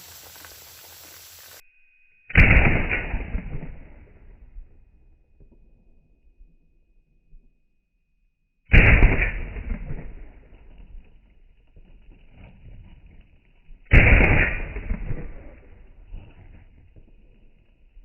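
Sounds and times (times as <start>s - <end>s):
rifle shots with echo: 2.3s - 4.2s, 8.7s - 10.7s, 13.9s - 15.8s.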